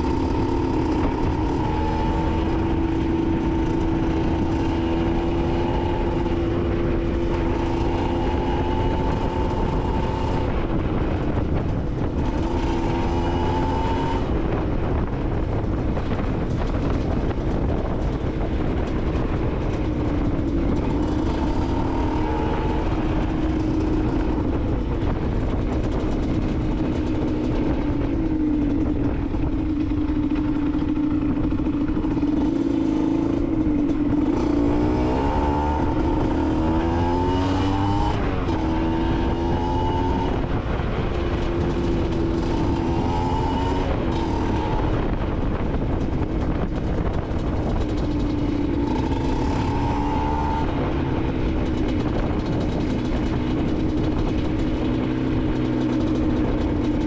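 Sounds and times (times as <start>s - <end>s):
two-stroke engine revving: 0.0s - 57.0s.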